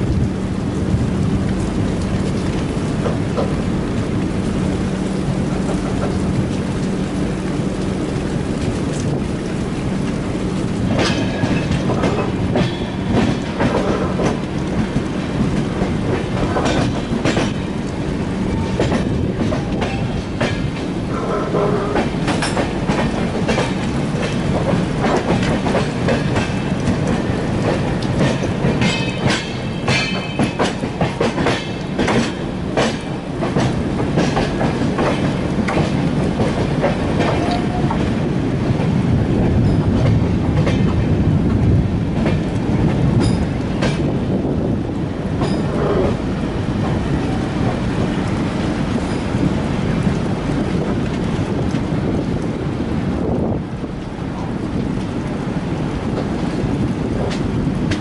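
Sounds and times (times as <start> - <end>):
train coaches rumbling on track: 0.0 - 58.0
wheels clacking over rail joints: 1.2 - 58.0.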